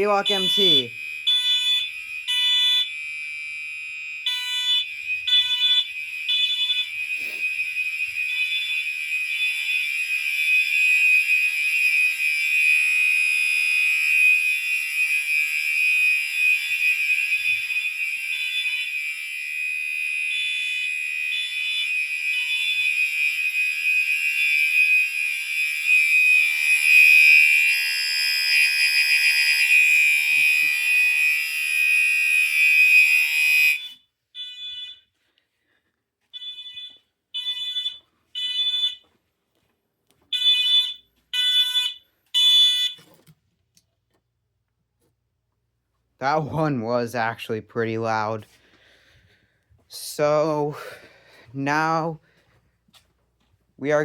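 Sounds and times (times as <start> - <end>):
fire alarm short beeps: 0.0 - 35.1, 36.3 - 39.1, 40.3 - 43.2
fire alarm horn buzzing: 0.0 - 39.2, 40.2 - 43.2, 50.0 - 52.2.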